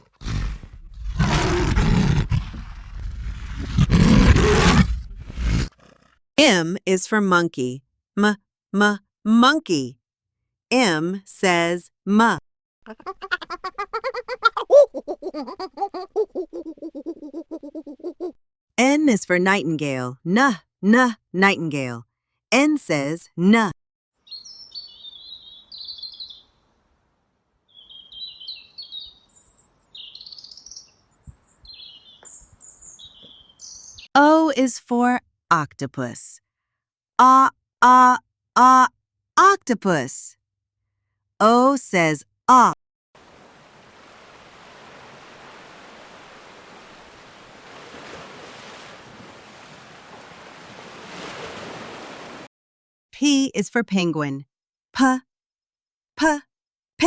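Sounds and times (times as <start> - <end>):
nightingale singing: 24.2 - 26.5, 27.7 - 34.1
ocean surf rushing: 43.2 - 52.5.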